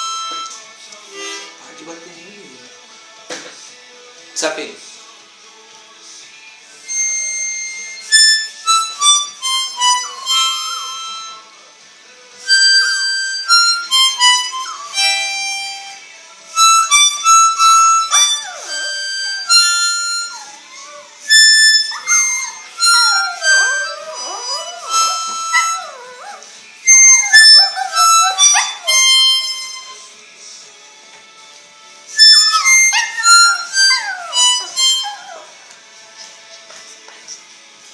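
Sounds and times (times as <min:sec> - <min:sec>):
harmonica playing: 0:00.0 - 0:01.6, 0:06.8 - 0:11.6, 0:12.4 - 0:30.4, 0:32.1 - 0:36.4
dog howling: 0:09.8 - 0:11.4, 0:16.8 - 0:30.1, 0:32.2 - 0:35.6.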